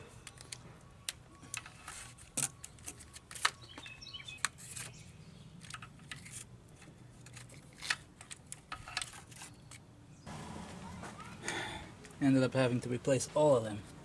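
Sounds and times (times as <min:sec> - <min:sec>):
small rattles of parts: 0:00.2 - 0:09.9.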